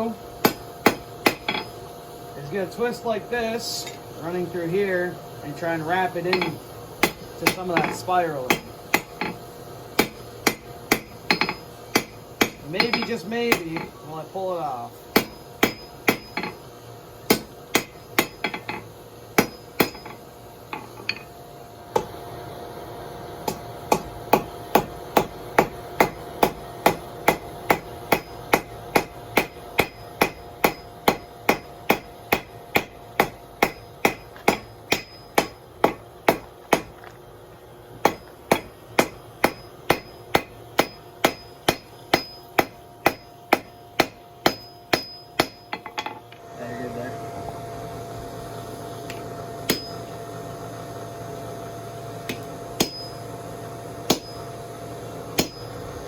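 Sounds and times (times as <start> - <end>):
hammer striking steel on anvil: 0.4 - 1.8, 6.2 - 9.4, 10.0 - 14.0, 15.1 - 16.7, 17.3 - 21.3, 21.9 - 22.2, 23.4 - 37.0, 38.0 - 46.2, 49.1 - 50.1, 52.3 - 53.3, 54.1 - 54.5, 55.4 - 55.8.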